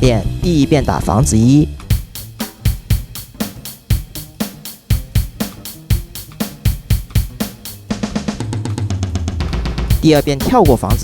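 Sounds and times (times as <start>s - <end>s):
hi-hat hits: 1.8s - 8.9s, 9.6s - 11.0s
bass drum and snare: 1.8s - 11.0s.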